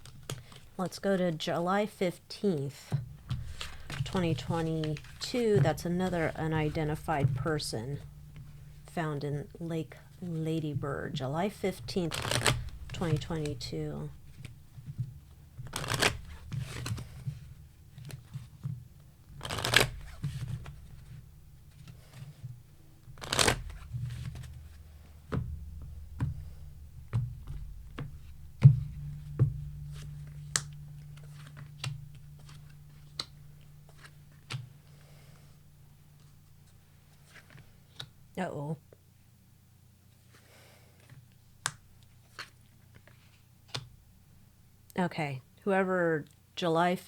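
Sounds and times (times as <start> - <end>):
cards being shuffled: 3.0 - 7.2, 11.8 - 15.0, 15.6 - 18.4, 19.3 - 21.1, 23.1 - 25.4.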